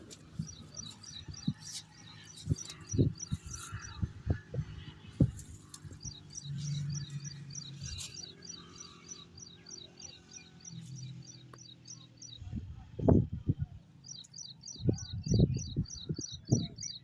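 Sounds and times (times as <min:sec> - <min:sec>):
dull low thumps: 0:00.0 - 0:08.0
bird chirping rapidly: 0:00.0 - 0:12.4.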